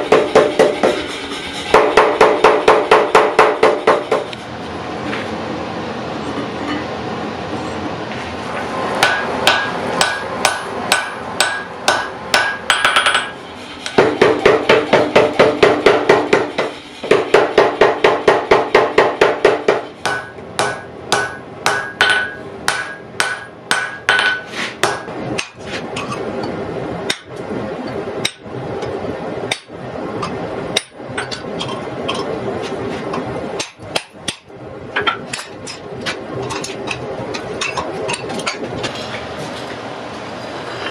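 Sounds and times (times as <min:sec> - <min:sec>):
hammer blows on anvil: 0:14.0 - 0:25.6.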